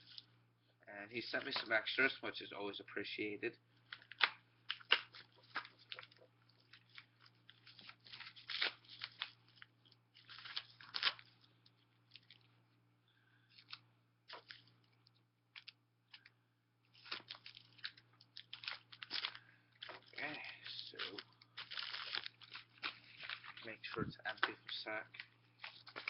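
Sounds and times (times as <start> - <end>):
packaging crinkling: 3.8 - 12.5, 13.5 - 16.3, 16.9 - 26.0.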